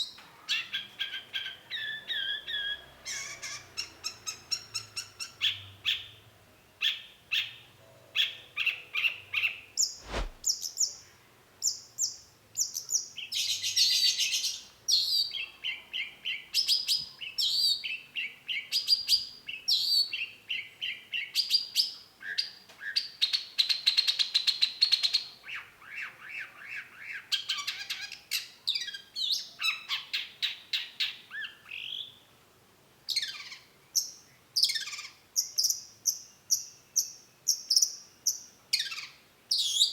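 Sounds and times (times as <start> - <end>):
sharp thump: 10.0 - 10.4.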